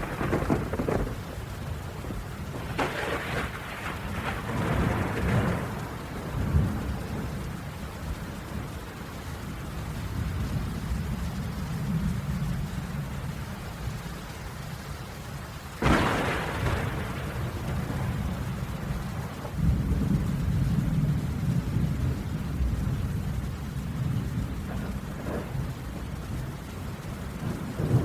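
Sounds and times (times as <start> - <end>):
sharp thunderclap: 0.0 - 7.4, 15.8 - 22.2, 24.2 - 28.0
rolling thunder rumbling: 0.0 - 28.0
steady rain: 0.0 - 28.0.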